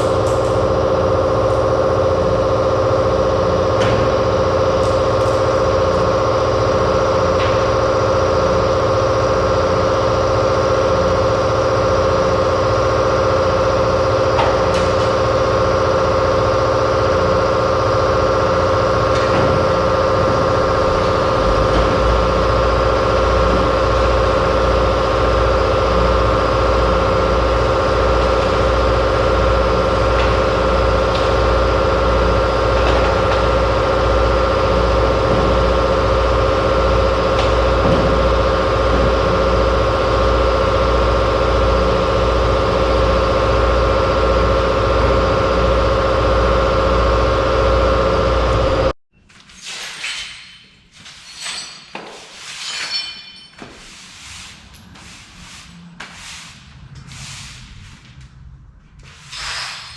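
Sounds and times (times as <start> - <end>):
machine motor droning: 0.1 - 49.0
low pulsing throb: 15.4 - 49.0.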